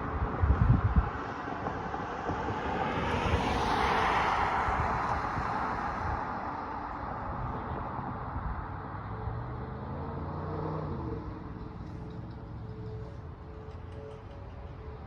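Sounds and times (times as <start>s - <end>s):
wind buffeting microphone: 0.0s - 8.9s
vehicle passing by: 7.3s - 13.7s.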